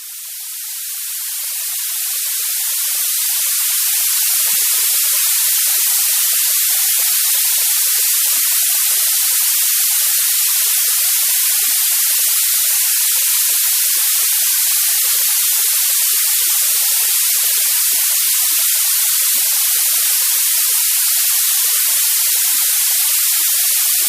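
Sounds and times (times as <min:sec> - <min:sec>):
white noise hiss: 0:00.0 - 0:24.0.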